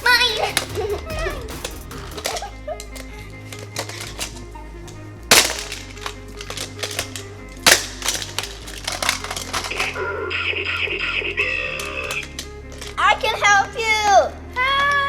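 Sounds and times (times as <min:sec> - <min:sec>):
loud sharp clacks: 0:00.0 - 0:04.4
toy cars clattering on plastic track: 0:00.0 - 0:10.2
background music: 0:00.0 - 0:15.0.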